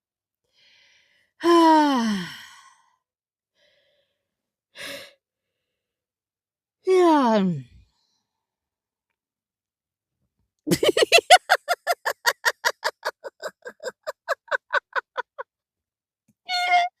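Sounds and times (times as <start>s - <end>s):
person laughing: 10.7s - 15.4s.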